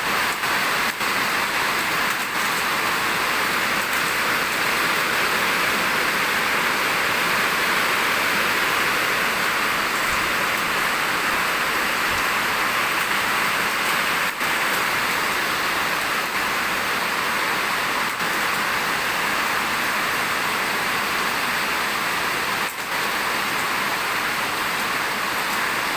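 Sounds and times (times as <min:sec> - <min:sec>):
falling water rushing: 0:00.0 - 0:25.9.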